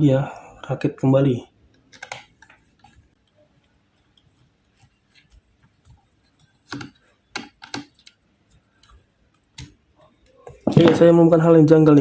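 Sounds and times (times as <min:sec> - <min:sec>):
laptop parts clicking and knocking: 0:01.7 - 0:11.0.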